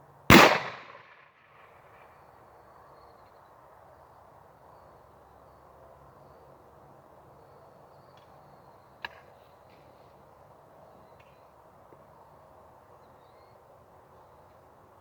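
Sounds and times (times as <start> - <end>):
shotgun shot: 0.3 - 1.3.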